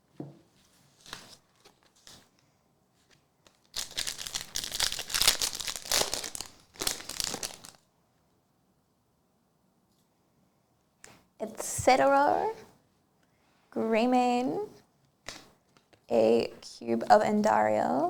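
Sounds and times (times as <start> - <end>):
foil wrapper crinkling: 3.4 - 7.8.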